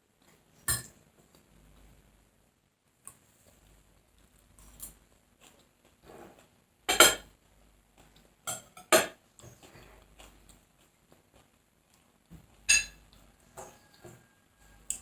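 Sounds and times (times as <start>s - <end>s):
faint chewing: 3.0s - 6.6s, 9.3s - 15.0s
utensils on dishes: 6.9s - 7.3s, 12.7s - 13.0s.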